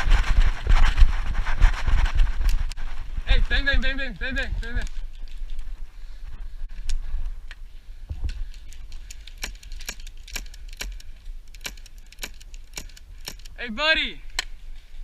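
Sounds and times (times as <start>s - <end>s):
sharp clicks: 8.4s - 13.6s.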